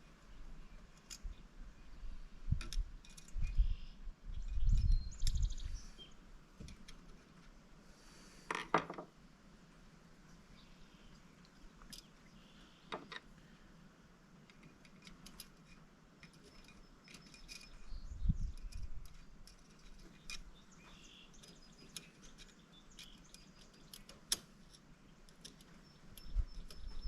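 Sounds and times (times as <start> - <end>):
metallic ticks of small parts: 0.9 - 1.3, 2.6 - 3.7, 14.5 - 17.9, 18.5 - 27.0.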